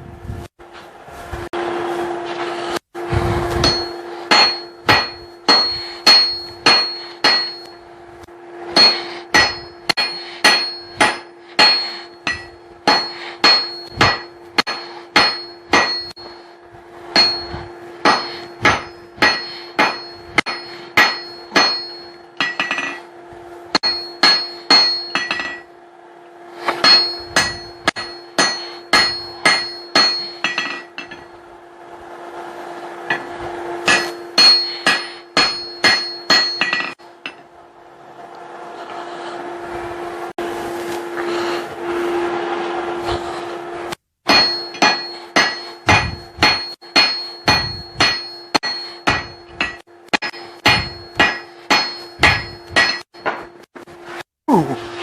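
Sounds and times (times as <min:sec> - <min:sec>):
steady low hum: 0:00.0 - 0:55.0
hammer striking steel on anvil: 0:03.0 - 0:07.9, 0:08.7 - 0:25.8, 0:26.6 - 0:31.5, 0:33.0 - 0:37.5, 0:44.3 - 0:53.8.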